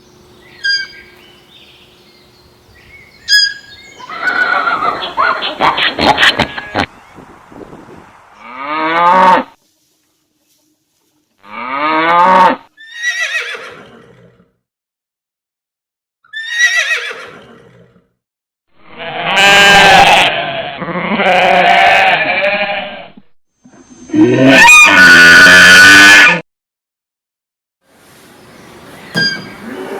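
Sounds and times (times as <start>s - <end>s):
farm animals calling: 0.3s - 7.0s, 18.9s - 22.9s, 28.8s - 29.9s.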